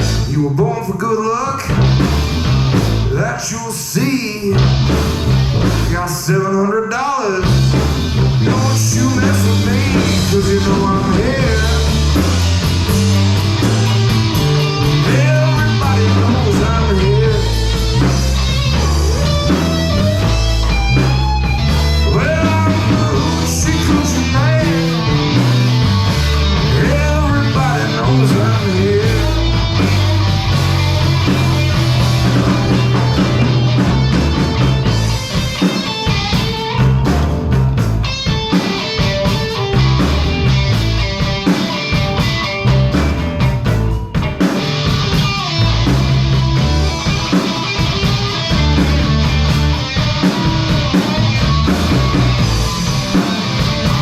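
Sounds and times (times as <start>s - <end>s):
bass line: 0.0s - 6.8s, 7.4s - 54.0s
drums: 0.0s - 54.0s
lead guitar solo: 11.2s - 26.8s, 27.8s - 54.0s.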